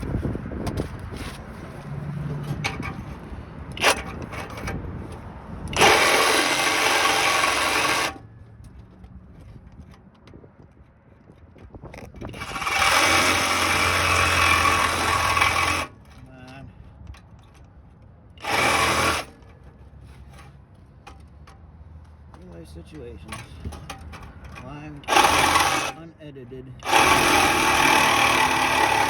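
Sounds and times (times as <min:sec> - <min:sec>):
power tool cutting pipe: 0:03.8 - 0:04.6, 0:05.7 - 0:08.2, 0:12.3 - 0:16.0, 0:18.4 - 0:19.5, 0:25.0 - 0:26.0, 0:26.8 - 0:29.0.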